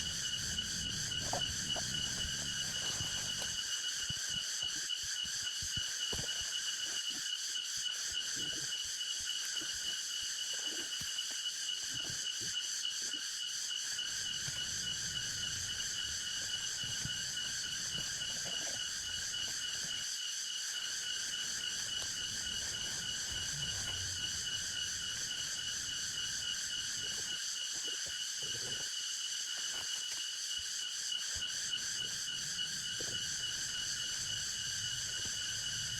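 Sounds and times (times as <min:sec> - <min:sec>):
insect chorus drone: 0:00.0 - 0:35.9.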